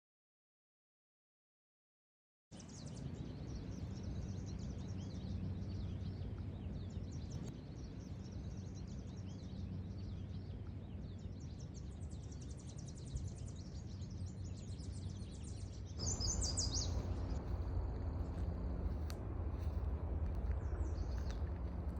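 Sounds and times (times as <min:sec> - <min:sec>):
low background rumble: 0:02.6 - 0:21.9
small birds chirping: 0:02.6 - 0:21.9
bird calling loudly nearby: 0:16.0 - 0:19.8.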